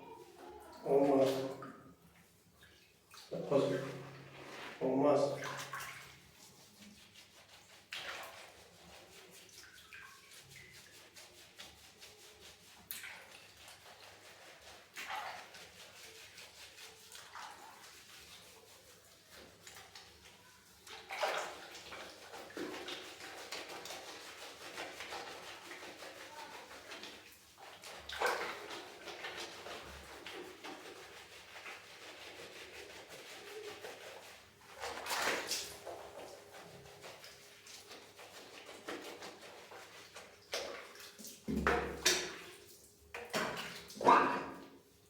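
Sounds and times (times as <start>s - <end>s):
water splashing: 20.8s - 44.7s.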